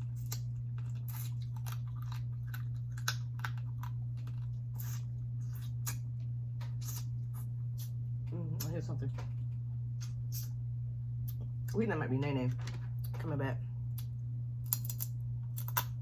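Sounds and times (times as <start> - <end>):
crab shell crunching: 0.0 - 6.1, 14.0 - 16.0
person chewing: 0.0 - 8.0, 13.9 - 16.0
low hum: 0.0 - 16.0.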